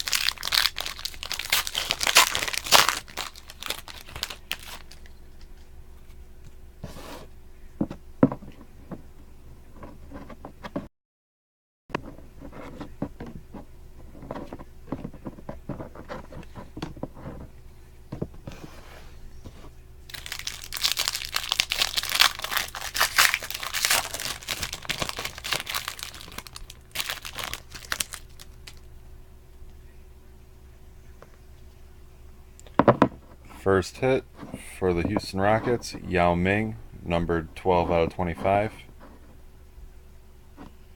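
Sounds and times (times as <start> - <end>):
wrapper tearing and crinkling: 0.0 - 5.1, 20.1 - 28.9
card pack rustling and clicking: 0.0 - 5.7, 20.1 - 28.8.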